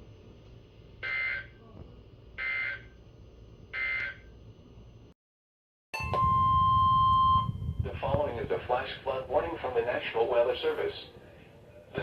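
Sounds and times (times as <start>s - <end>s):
faint radio hiss: 7.8s - 12.0s.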